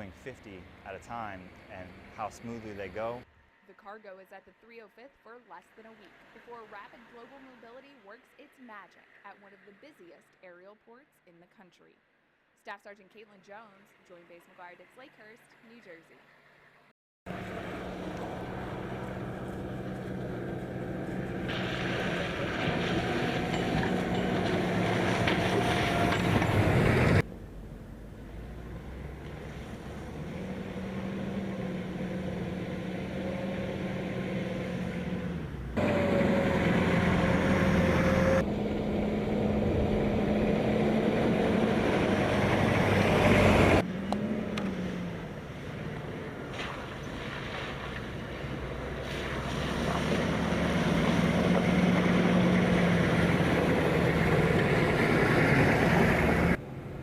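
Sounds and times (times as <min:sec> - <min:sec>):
military vehicle engines running: 0:00.0 - 0:03.3, 0:17.3 - 0:57.0.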